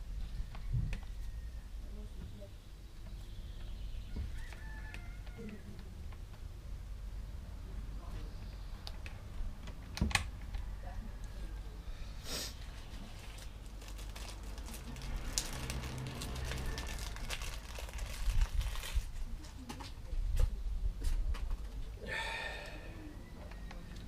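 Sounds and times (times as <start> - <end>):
crinkling and rustling: 12.5 - 21.9.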